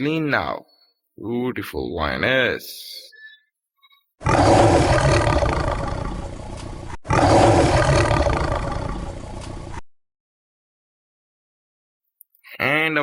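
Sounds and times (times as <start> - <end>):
lion roaring: 4.2 - 9.8.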